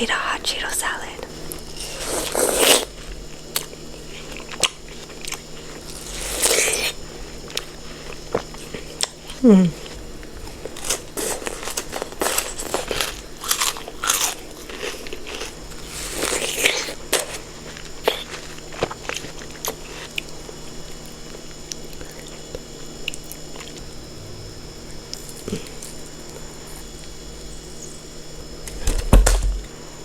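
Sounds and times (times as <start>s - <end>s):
crunching and chewing: 1.4s - 23.9s.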